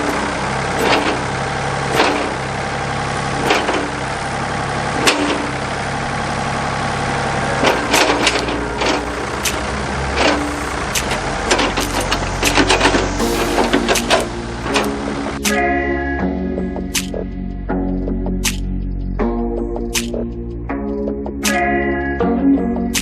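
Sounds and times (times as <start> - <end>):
metal clanks and knocks: 0.0 - 15.6
backhoe engine running: 0.0 - 19.2.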